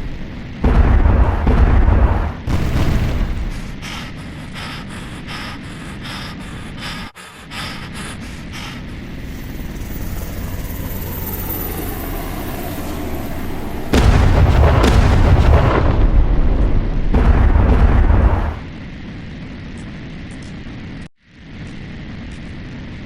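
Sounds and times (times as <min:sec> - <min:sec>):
house crashing: 0:00.0 - 0:04.0, 0:13.9 - 0:18.8
low destruction rumble: 0:00.0 - 0:04.7, 0:09.0 - 0:19.3.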